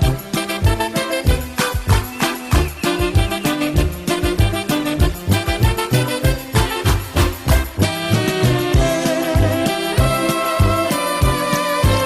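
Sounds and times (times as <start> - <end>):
held melody notes: 0.0 - 12.0.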